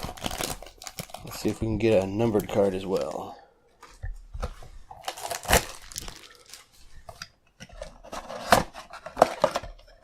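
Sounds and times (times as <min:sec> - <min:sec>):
foil wrappers crinkling: 0:00.0 - 0:03.3, 0:05.0 - 0:07.0.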